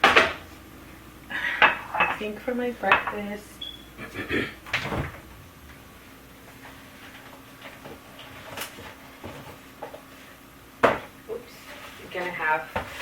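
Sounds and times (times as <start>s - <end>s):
faint steady hum: 0.0s - 13.0s
kitchen items clattering: 1.4s - 3.3s, 10.8s - 13.0s.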